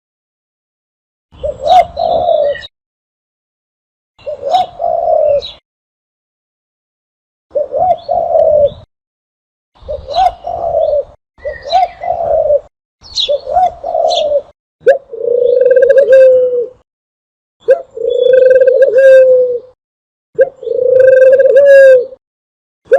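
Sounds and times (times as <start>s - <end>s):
dove cooing: 1.4s - 2.7s, 4.2s - 5.6s, 7.5s - 8.9s, 9.8s - 16.8s, 17.6s - 19.8s, 20.4s - 22.2s.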